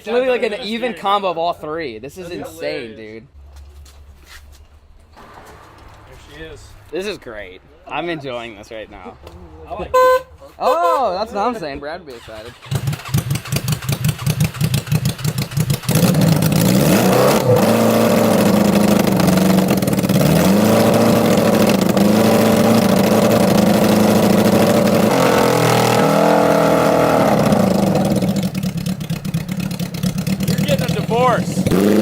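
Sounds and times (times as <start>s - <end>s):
engine idling and revving: 12.1s - 32.0s.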